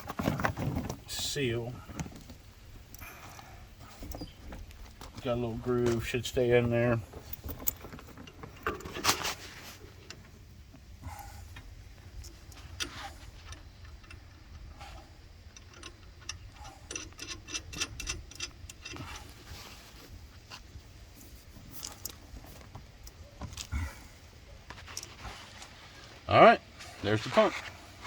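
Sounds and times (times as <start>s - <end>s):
small metal clicks and knocks: 7.1s - 9.3s, 11.5s - 19.4s.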